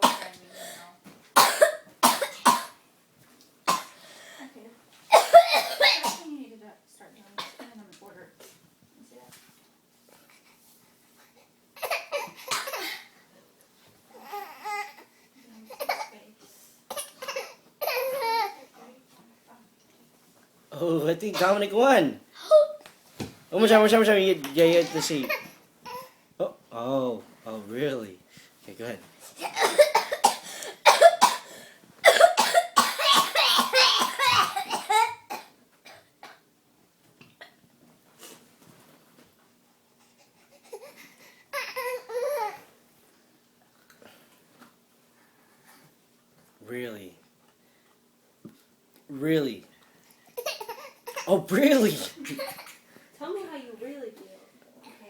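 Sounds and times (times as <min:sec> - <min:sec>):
baby fake coughing: 0:00.0 - 0:00.4, 0:01.4 - 0:02.8, 0:05.1 - 0:06.3, 0:11.8 - 0:13.1, 0:16.9 - 0:18.6, 0:29.4 - 0:36.4, 0:50.4 - 0:52.7
boy fake coughing: 0:01.4 - 0:02.8, 0:05.1 - 0:06.3, 0:11.8 - 0:13.1, 0:21.4 - 0:21.7, 0:29.4 - 0:36.4.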